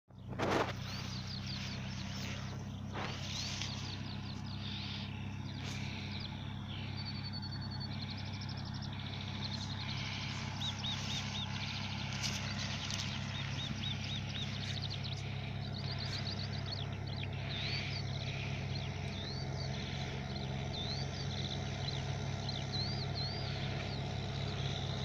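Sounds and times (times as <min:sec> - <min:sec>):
birds chirping and trilling: 0:00.1 - 0:25.0
tractor engine running: 0:00.1 - 0:25.0.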